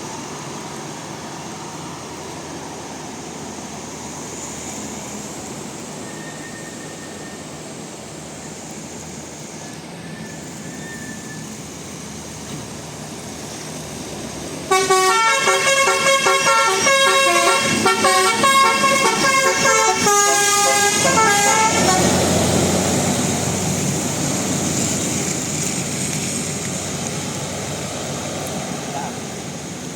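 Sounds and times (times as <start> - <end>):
bus running noise: 0.0 - 29.9
bus horn playing a tune: 14.7 - 22.5.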